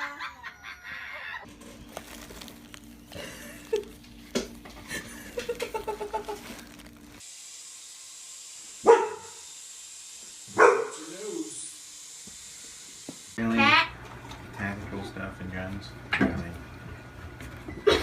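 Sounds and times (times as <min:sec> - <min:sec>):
dog barking: 0:08.8 - 0:09.4, 0:10.5 - 0:11.0.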